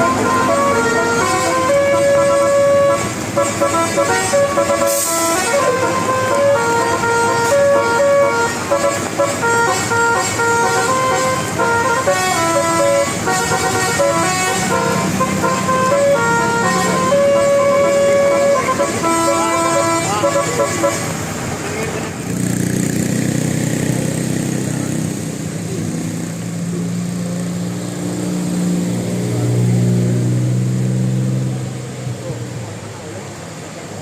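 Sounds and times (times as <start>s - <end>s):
multi-tone bus horn melody: 0.0s - 22.0s.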